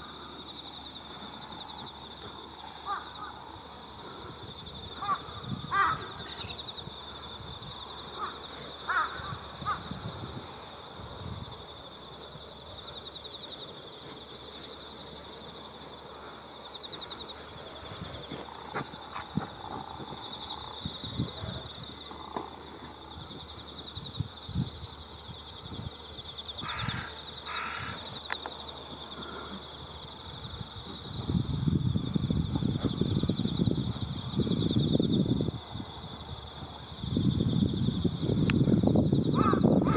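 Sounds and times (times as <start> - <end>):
insects chirring: 0.0 - 39.9
distant crow cawing: 2.8 - 3.5, 5.0 - 6.5, 8.1 - 9.9, 26.6 - 28.2, 39.4 - 39.9.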